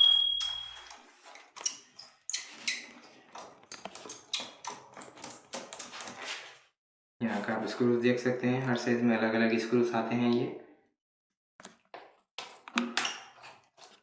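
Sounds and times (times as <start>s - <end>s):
sharp metallic ping: 0.0s - 0.9s
screwdriver clicking and scraping: 0.4s - 6.3s.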